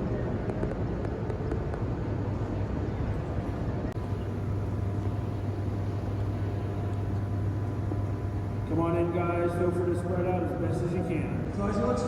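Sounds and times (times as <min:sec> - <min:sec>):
low machinery hum: 0:00.0 - 0:12.0.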